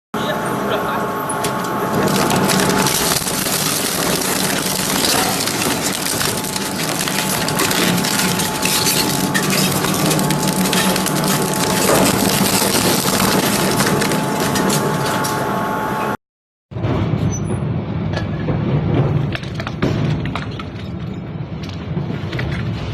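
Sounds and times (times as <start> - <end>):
shredding machine crushing material: 1.0 - 15.9.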